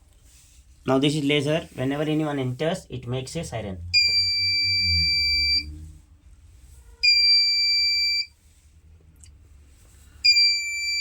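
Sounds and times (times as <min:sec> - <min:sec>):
alarm buzzer beeping: 0:03.9 - 0:05.7, 0:07.0 - 0:08.3.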